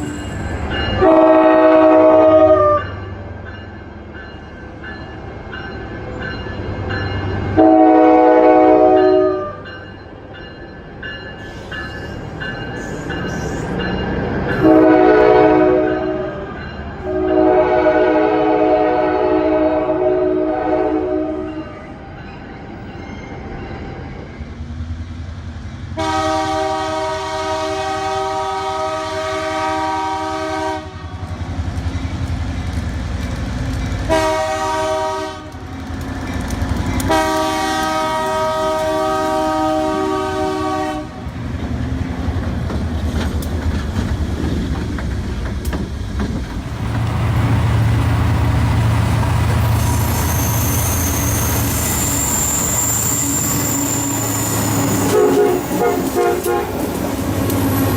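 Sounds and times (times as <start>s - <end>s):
train rumble: 0.0s - 57.9s
locomotive air horn chord: 1.0s - 3.0s, 7.6s - 9.6s, 14.6s - 21.6s, 26.0s - 31.0s, 34.1s - 35.5s, 37.1s - 41.2s, 53.2s - 56.8s
clickety-clack of wheels: 41.6s - 47.1s.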